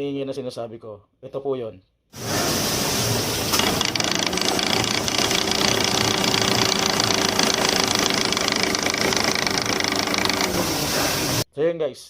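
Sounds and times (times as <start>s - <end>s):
metallic whirring with fast knocking: 3.5s - 11.4s.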